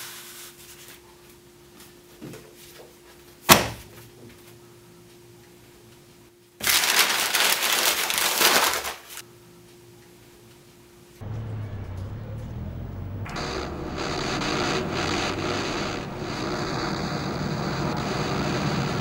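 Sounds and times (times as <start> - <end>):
loud burst of noise: 11.2 - 19.0.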